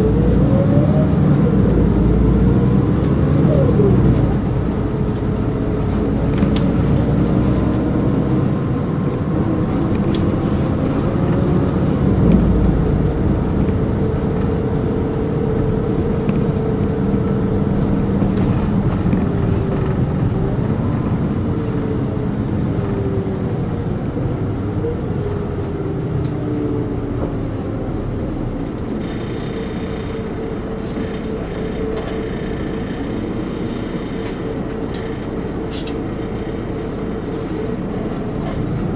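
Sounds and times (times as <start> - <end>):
bus diesel engine running: 0.0 - 38.9.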